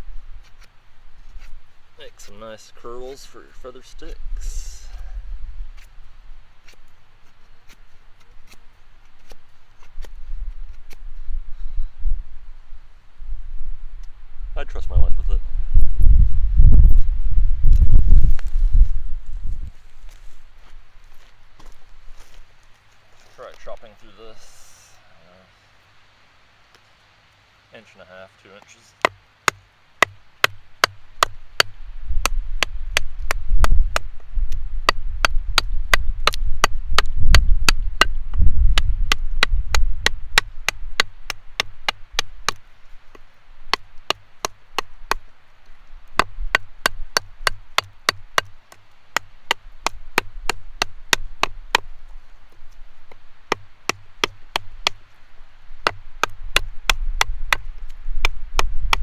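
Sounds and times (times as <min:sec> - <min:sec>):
knife chopping into wood: 0:29.0 - 0:34.1, 0:34.9 - 0:45.3, 0:46.1 - 0:51.9, 0:53.1 - 0:55.1, 0:55.8 - 0:59.0.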